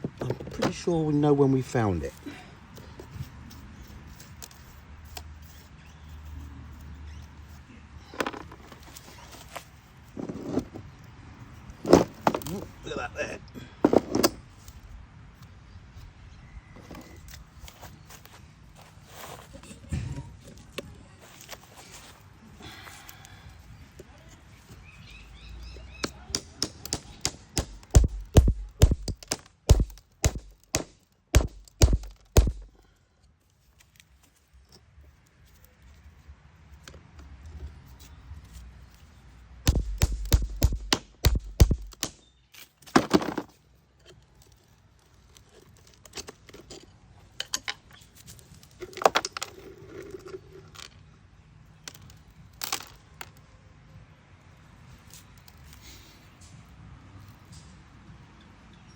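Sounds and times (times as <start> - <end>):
rock struck with hard knocks: 26.4 - 32.8, 39.7 - 42.2.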